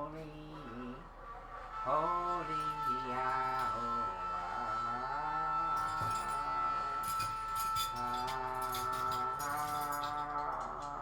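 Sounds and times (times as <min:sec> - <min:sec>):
jingling percussion: 0:05.8 - 0:11.0.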